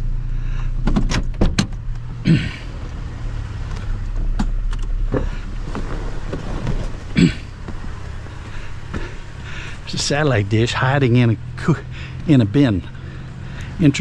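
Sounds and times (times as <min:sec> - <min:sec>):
vehicle engine humming: 0:00.0 - 0:14.0
sharp clicks and knocks: 0:00.8 - 0:02.1, 0:03.7 - 0:08.0
rustling: 0:03.6 - 0:09.9.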